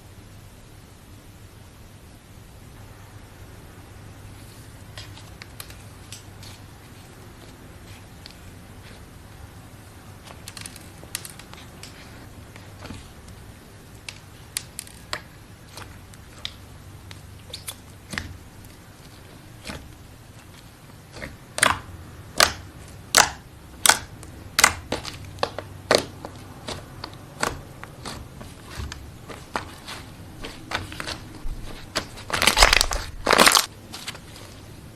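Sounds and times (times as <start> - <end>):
slime popping and crackling: 14.0 - 33.7.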